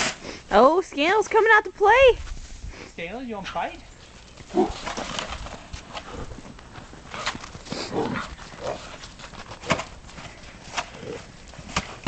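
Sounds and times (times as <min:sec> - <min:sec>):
dog growls and grumbles: 0:04.5 - 0:04.9, 0:07.7 - 0:09.0.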